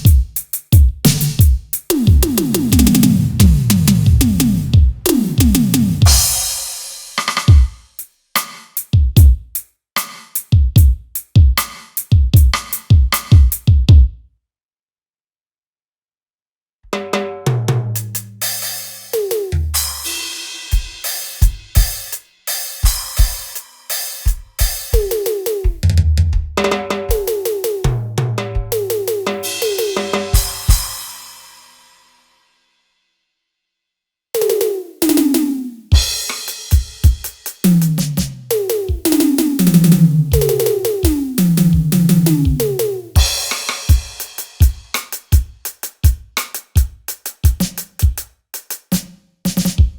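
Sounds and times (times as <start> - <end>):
electronic drum pattern: 0.0 - 7.8, 10.5 - 14.1, 19.2 - 20.1, 24.2 - 31.0, 34.4 - 48.3
electronic kick drum hits: 1.1 - 6.7, 36.0 - 44.8
cymbal crash: 1.9 - 7.6, 29.4 - 32.4
low bass notes: 2.0 - 6.2, 39.6 - 43.1.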